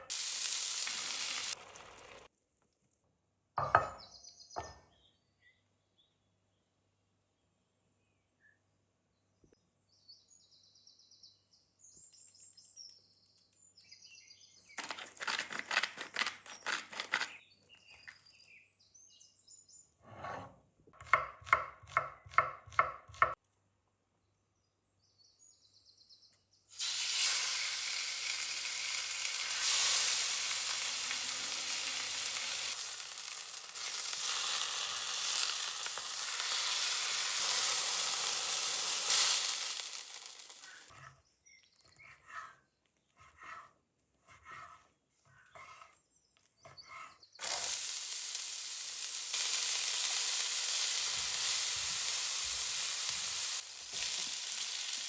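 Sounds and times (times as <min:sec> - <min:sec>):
chicken sizzling in a pan: 0:00.0 - 0:02.3, 0:26.7 - 0:40.9, 0:47.4 - 0:55.0.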